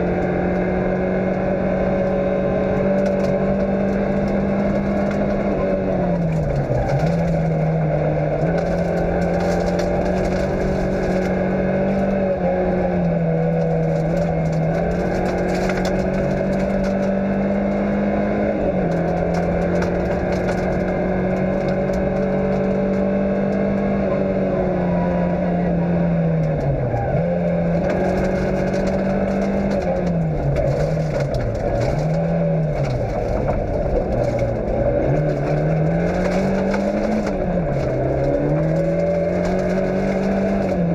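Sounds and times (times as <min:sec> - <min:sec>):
gravel crackling under car: 0:00.0 - 0:40.9
rally car engine revving: 0:00.0 - 0:40.9.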